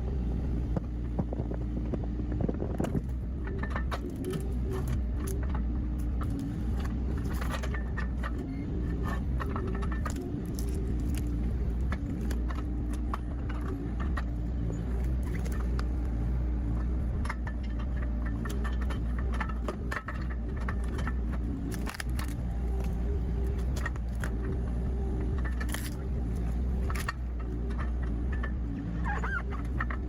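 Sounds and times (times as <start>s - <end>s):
excavator engine humming: 0.0s - 30.0s.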